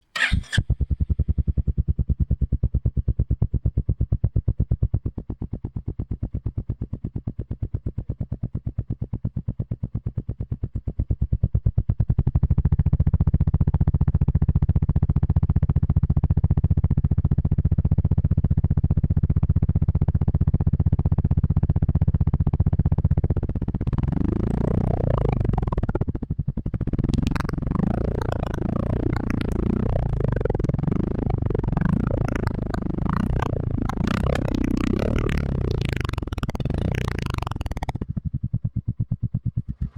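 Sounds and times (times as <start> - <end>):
single-cylinder engine running: 0.0 - 1.7, 14.5 - 39.9.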